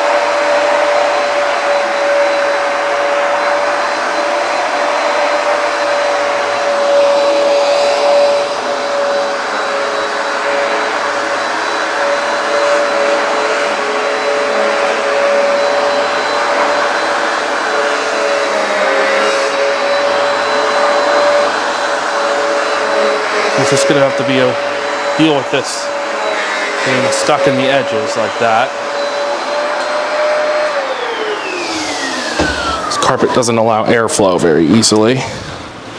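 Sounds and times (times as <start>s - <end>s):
carpet cleaner motor whining: 0.0s - 35.9s.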